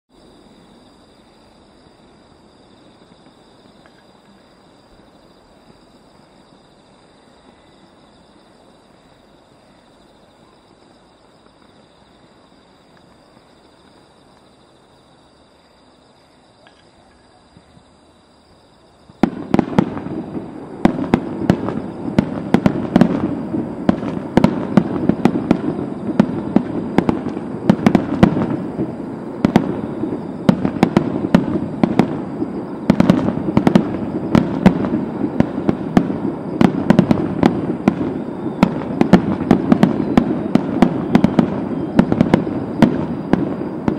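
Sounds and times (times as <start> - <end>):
faint high whine: 0.1 - 43.9
distant fireworks booms and cracks: 18.6 - 43.9.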